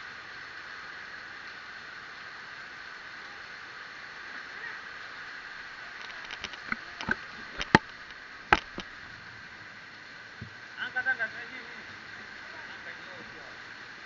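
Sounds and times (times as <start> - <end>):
heavy rain hissing: 0.0 - 14.0.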